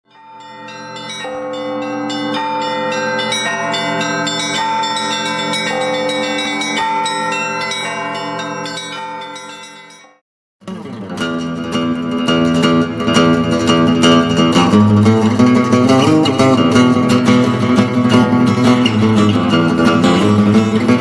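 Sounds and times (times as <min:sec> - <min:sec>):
ringing bell tones: 0:00.1 - 0:10.2.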